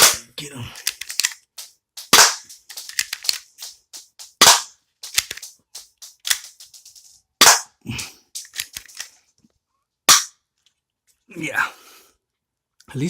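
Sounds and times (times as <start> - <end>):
pistol slide clicks and clacks: 0.8 - 7.6, 8.4 - 9.2
airsoft pistol shots: 2.1 - 3.2, 4.4 - 5.5, 7.4 - 7.7, 10.1 - 10.3.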